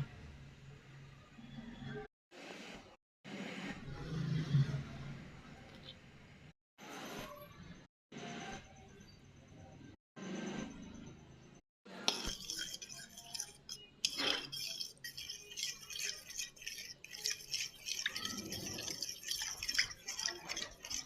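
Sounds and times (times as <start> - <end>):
utensils clinking against dishes: 12.1 - 21.0.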